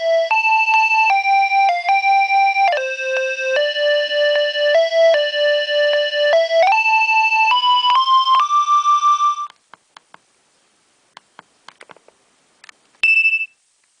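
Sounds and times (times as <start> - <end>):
electronic phone ringtone: 0.0 - 9.5
short high beep: 13.0 - 13.6.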